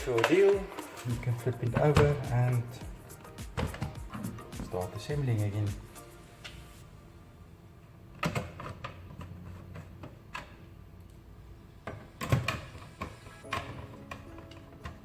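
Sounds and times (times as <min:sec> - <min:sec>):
console parts clicking and knocking: 0:00.0 - 0:05.0
background music: 0:00.0 - 0:07.4, 0:12.9 - 0:15.0.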